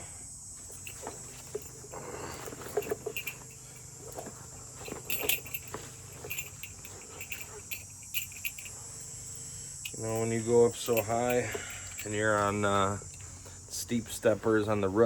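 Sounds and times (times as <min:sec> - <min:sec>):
insect chirps: 0:00.0 - 0:15.0
insects droning: 0:00.0 - 0:15.0
tools clicking and rustling: 0:00.7 - 0:13.2.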